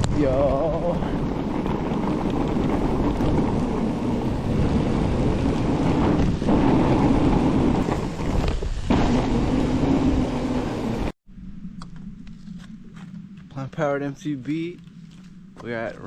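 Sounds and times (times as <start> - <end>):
wind buffeting microphone: 0.0 - 11.1.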